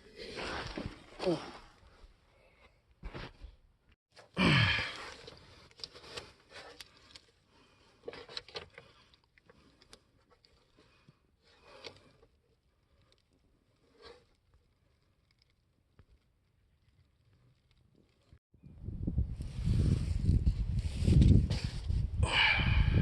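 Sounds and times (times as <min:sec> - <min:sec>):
person exhaling loudly: 0:04.4 - 0:05.2, 0:22.2 - 0:23.0.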